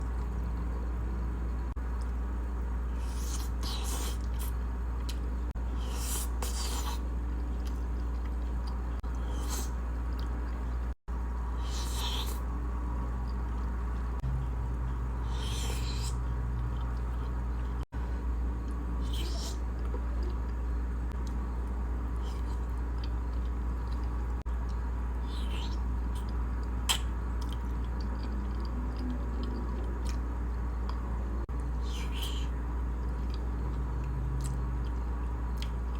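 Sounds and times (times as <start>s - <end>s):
steady low hum: 0.0s - 35.9s
person chewing wetly: 6.0s - 11.0s, 18.6s - 35.9s.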